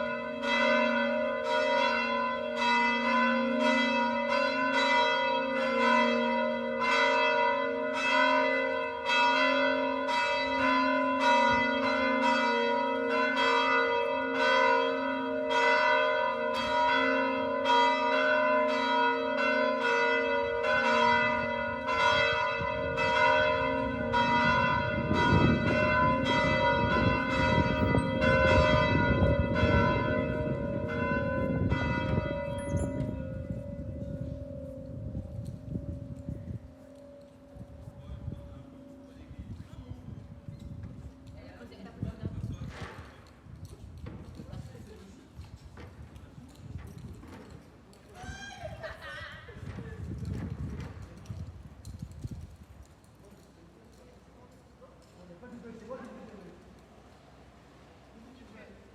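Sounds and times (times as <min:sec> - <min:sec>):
church bells ringing: 0:00.0 - 0:42.6.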